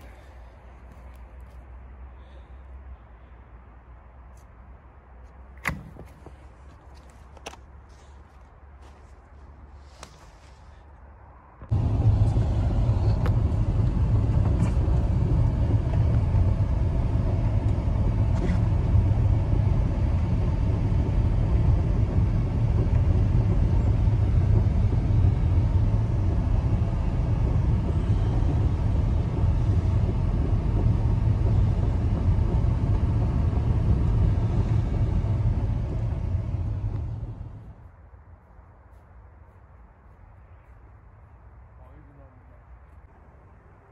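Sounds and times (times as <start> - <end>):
loud low rumbling: 11.6 - 38.0.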